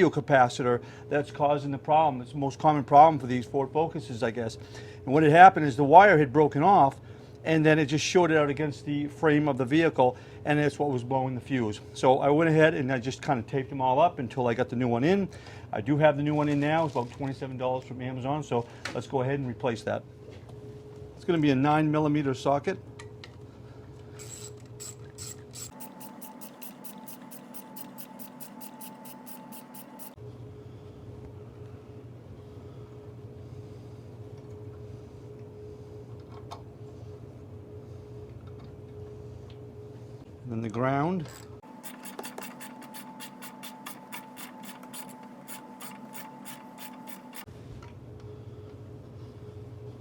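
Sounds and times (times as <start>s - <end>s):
ratchet wrench clicking: 24.2s - 30.2s, 41.6s - 47.5s.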